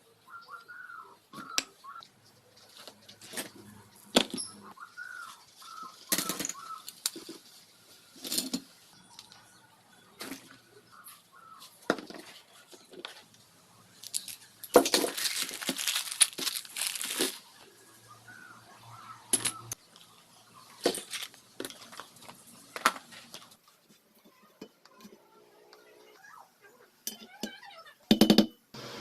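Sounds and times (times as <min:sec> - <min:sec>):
rough rustling: 0:14.0 - 0:18.6.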